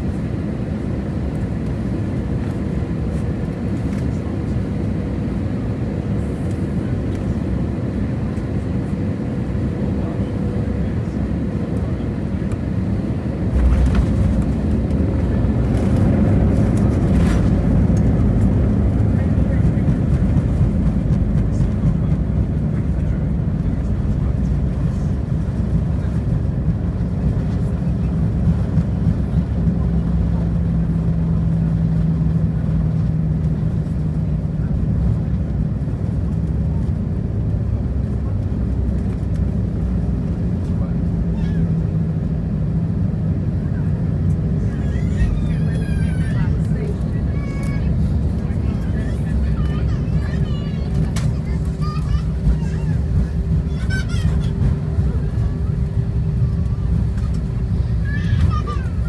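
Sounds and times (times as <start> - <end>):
airplane cabin engine rumble: 0.0 - 59.0
constant low hum: 0.0 - 59.0.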